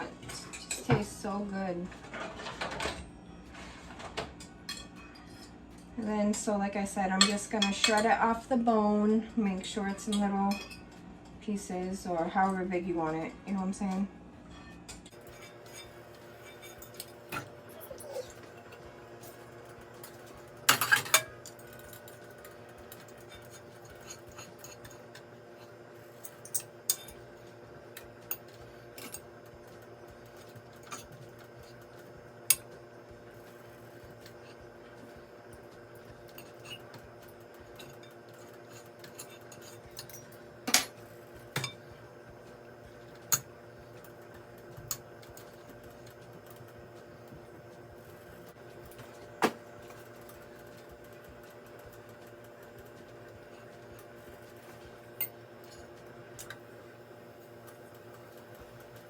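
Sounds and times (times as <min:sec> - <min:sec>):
forks clinking against a dish: 0:04.4 - 0:05.8, 0:07.2 - 0:08.2, 0:09.8 - 0:11.0, 0:14.5 - 0:29.3, 0:30.3 - 0:31.8, 0:35.6 - 0:41.9.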